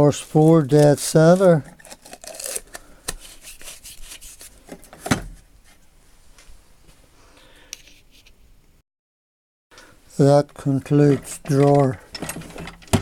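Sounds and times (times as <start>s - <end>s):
tools clicking and rustling: 11.0s - 13.0s.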